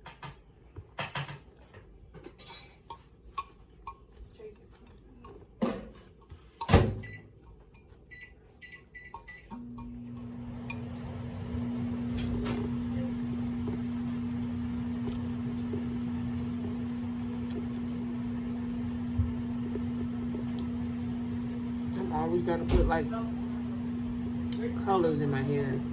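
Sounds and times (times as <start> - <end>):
microwave oven humming: 2.9 - 25.9
microwave keypad beeps: 6.6 - 7.3, 8.1 - 10.0.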